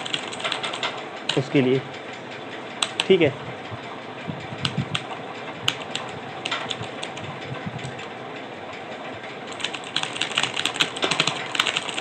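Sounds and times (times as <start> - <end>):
steady background noise: 0.0 - 12.0.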